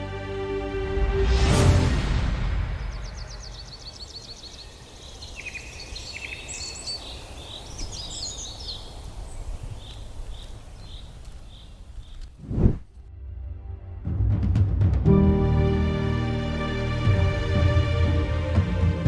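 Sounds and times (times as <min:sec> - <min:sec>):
low wind rumble: 0:01.9 - 0:13.1
songbirds chirping and trilling: 0:02.6 - 0:12.7.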